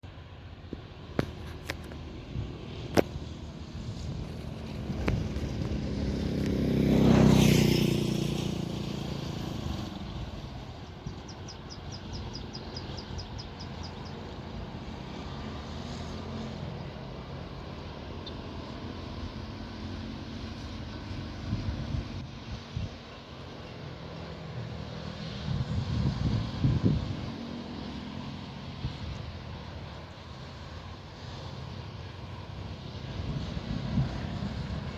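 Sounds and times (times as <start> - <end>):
distant engine: 0.0 - 34.9
wind buffeting microphone: 0.8 - 14.8, 20.7 - 23.2, 25.3 - 27.5, 32.1 - 34.9.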